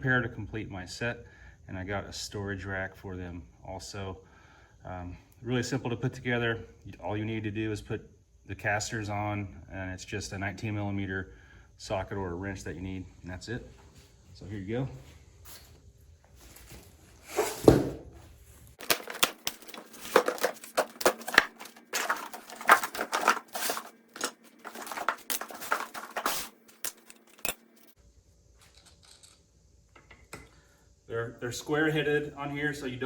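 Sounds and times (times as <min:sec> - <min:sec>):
packaging tearing and crinkling: 0:18.8 - 0:28.0.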